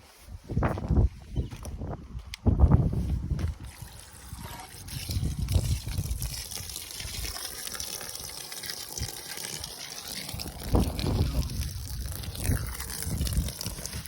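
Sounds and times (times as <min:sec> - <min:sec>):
water stream pouring from outlet: 0:03.3 - 0:14.0.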